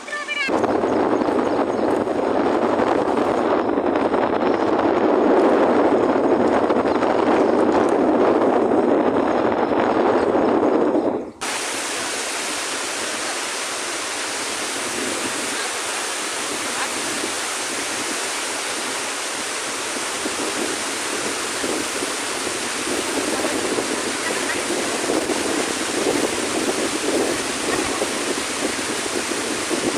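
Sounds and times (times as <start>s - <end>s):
water rushing from dam: 11.4s - 29.9s.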